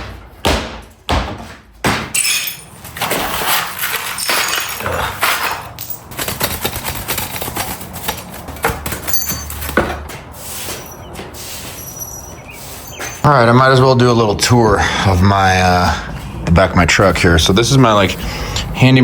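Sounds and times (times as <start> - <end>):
tools clattering and knocking: 1.4 - 13.2.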